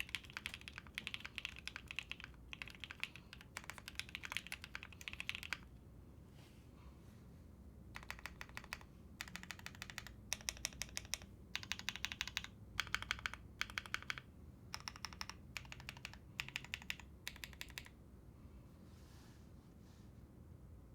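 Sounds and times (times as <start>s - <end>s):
mechanical keyboard typing: 0.0s - 5.7s, 7.9s - 18.0s.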